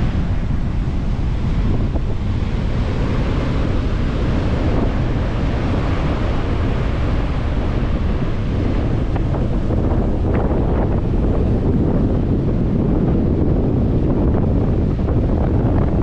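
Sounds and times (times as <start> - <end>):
sea waves breaking on beach: 0.0 - 16.0
wind buffeting microphone: 0.0 - 16.0.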